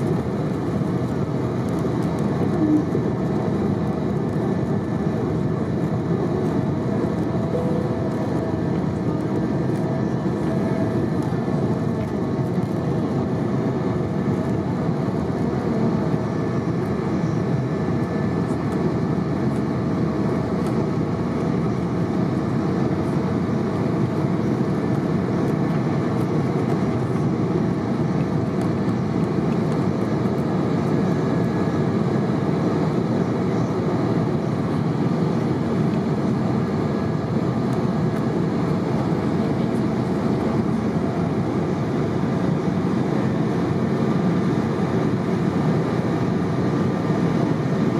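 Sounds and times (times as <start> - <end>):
airplane cabin engine noise: 0.0 - 47.9
faint steady tones: 2.5 - 12.0.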